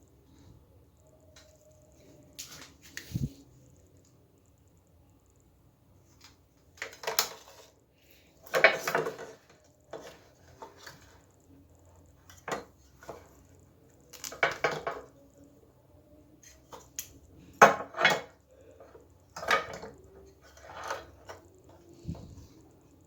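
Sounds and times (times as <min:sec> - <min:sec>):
hard objects clattering: 0:08.4 - 0:11.1, 0:14.1 - 0:15.2, 0:16.7 - 0:22.6.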